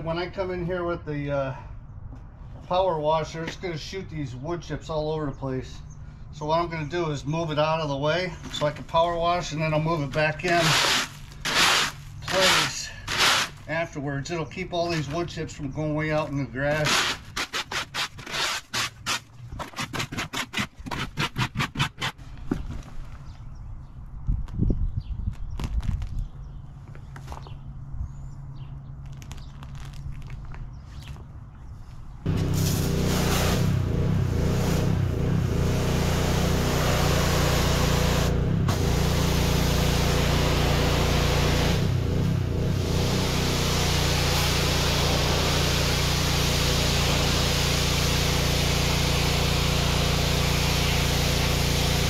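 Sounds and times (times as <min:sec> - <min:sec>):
short scrapes and scuffs: 0:08.4 - 0:13.9, 0:16.7 - 0:23.5
pressure washer engine running: 0:10.1 - 0:13.6, 0:32.3 - 0:52.0
water jet spraying hiss: 0:32.3 - 0:33.8, 0:35.8 - 0:41.9, 0:42.9 - 0:52.0.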